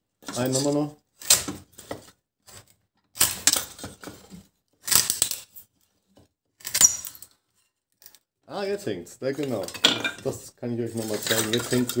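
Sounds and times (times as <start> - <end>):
wood cracking and splintering: 4.8 - 5.5, 11.0 - 12.0.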